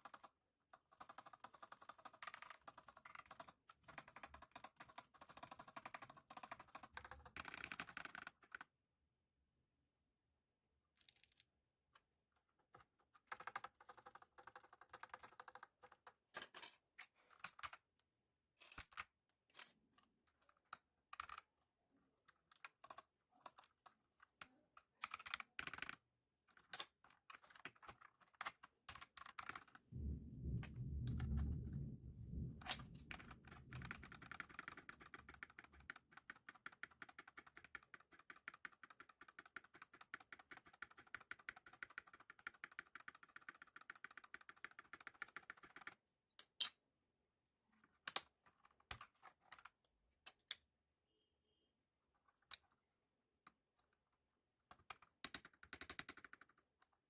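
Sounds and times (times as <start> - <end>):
typing on a mechanical keyboard: 0.0 - 8.6, 13.2 - 16.1, 33.1 - 46.0, 54.9 - 56.6
low rumble: 30.0 - 34.6.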